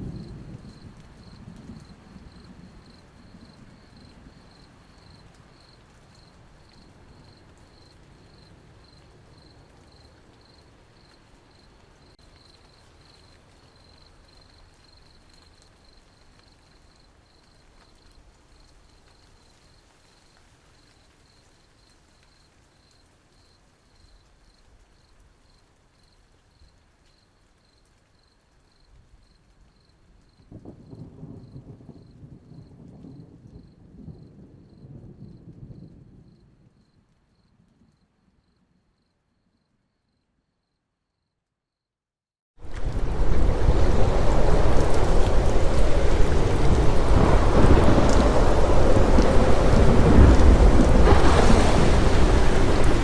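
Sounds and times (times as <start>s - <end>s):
low thunder rumbling: 0.0s - 5.7s, 30.4s - 36.8s, 42.6s - 53.0s
crickets chirping: 0.0s - 32.1s, 33.6s - 34.8s, 36.3s - 41.3s, 43.0s - 53.0s
light rain: 0.0s - 39.8s, 42.6s - 53.0s.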